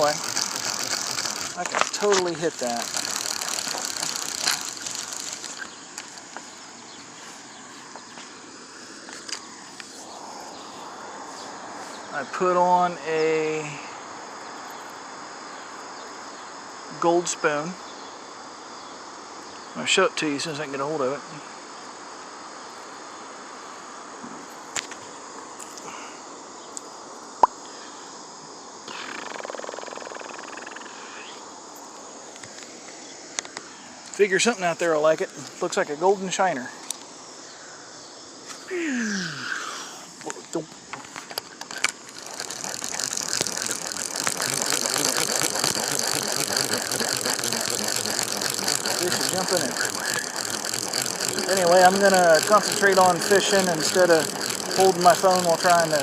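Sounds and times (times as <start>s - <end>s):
fishing reel ratcheting clicks: 0.0s - 6.4s, 29.1s - 30.9s, 41.2s - 56.0s
insects chorus: 0.0s - 56.0s.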